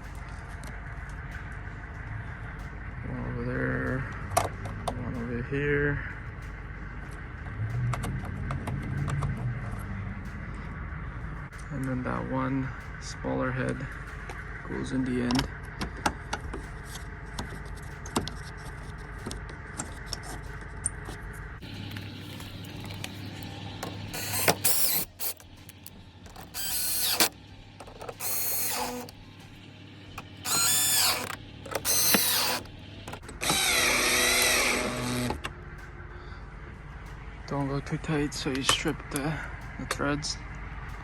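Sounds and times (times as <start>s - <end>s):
cordless drill running: 21.6s - 29.2s, 30.2s - 35.5s.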